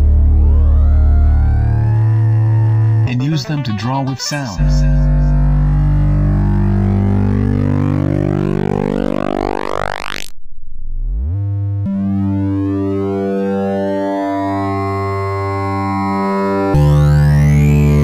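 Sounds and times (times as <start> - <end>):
synthesized drone: 0.0 - 18.0.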